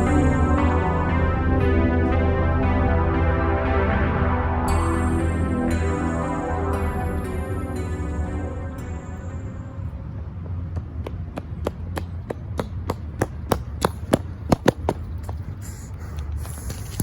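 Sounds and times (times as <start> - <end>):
steady low hum: 0.0 - 16.8
rapid sharp knocks: 11.9 - 15.0.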